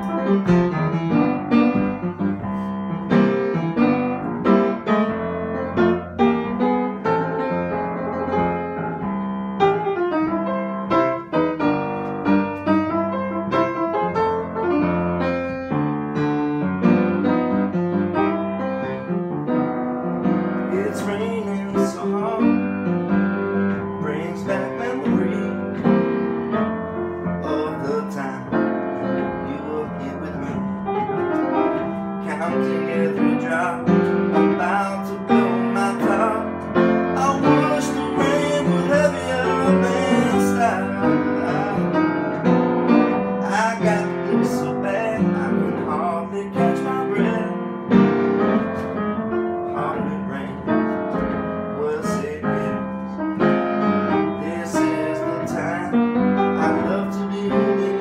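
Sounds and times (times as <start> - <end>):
piano music: 0.0 - 58.0.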